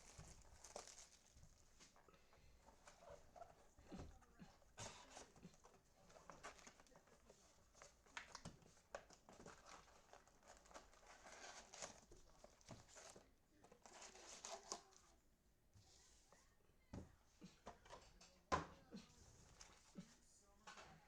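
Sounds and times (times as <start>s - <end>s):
wrappers crinkling and tearing: 0.0s - 2.0s, 9.0s - 13.2s
cards rustling and clicking: 5.0s - 15.0s.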